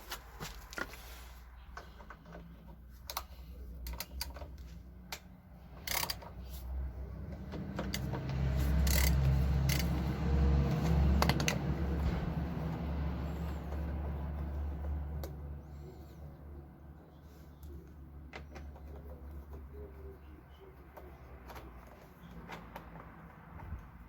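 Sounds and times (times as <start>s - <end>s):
metallic clicks and clinks: 7.8s - 10.1s.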